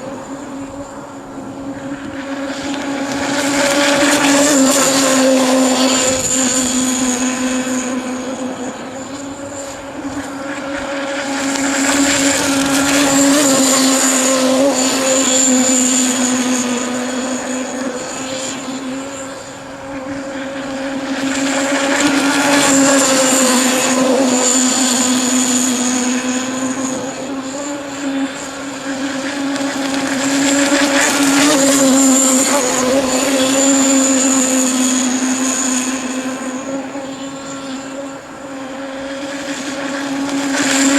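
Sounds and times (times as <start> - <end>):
model boat engine buzzing: 0.0 - 40.9.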